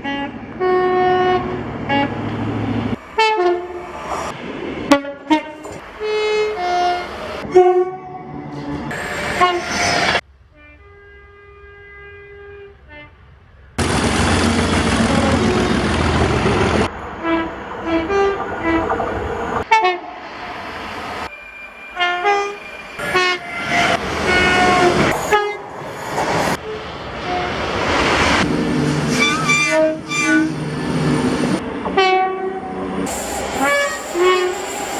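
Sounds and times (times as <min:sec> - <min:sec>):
train horn blasts: 0:00.0 - 0:02.2, 0:03.2 - 0:03.8, 0:04.9 - 0:08.6, 0:09.4 - 0:09.8, 0:10.5 - 0:13.2, 0:15.0 - 0:15.9, 0:17.2 - 0:18.9, 0:19.6 - 0:20.2, 0:22.0 - 0:25.7, 0:29.1 - 0:30.6, 0:31.9 - 0:32.8, 0:33.6 - 0:34.6
loud rush of noise: 0:13.8 - 0:17.8.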